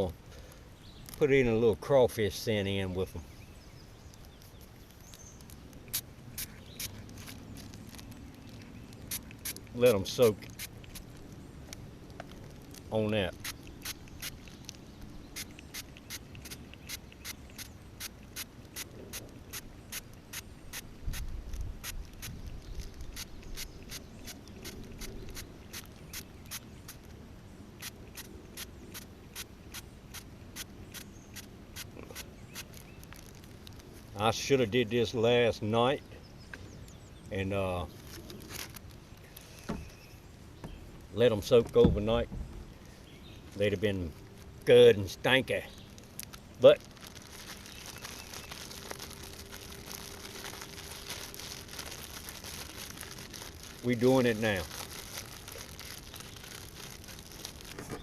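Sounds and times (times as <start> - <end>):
plastic bag crinkling: 4.1 - 11.4, 12.0 - 17.8, 21.4 - 27.1, 31.4 - 34.2, 37.9 - 39.7, 45.5 - 58.0.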